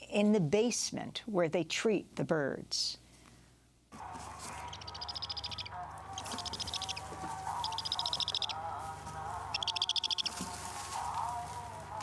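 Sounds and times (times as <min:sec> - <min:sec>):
bird chattering: 0:04.5 - 0:08.7, 0:09.4 - 0:10.4.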